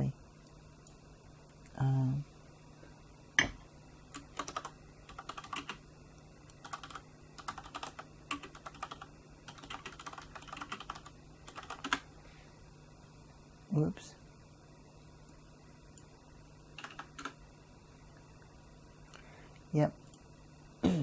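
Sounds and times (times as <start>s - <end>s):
typing on computer keyboard: 4.1s - 5.8s, 6.5s - 12.0s, 16.8s - 17.4s.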